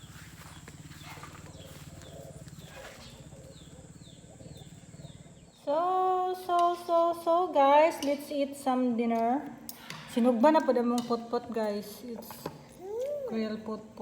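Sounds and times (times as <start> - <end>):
birds chirping: 0.0 - 6.1
woman speaking: 5.6 - 12.4, 13.2 - 14.0.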